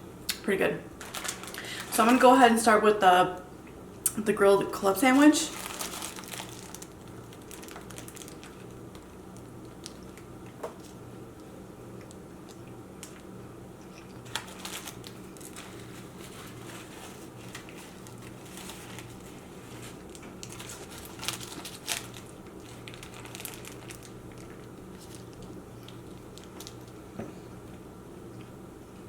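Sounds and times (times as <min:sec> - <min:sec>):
low steady hum: 0:00.0 - 0:29.0
sandwich wrapper crinkling: 0:01.0 - 0:02.3, 0:05.0 - 0:11.0, 0:14.0 - 0:27.1.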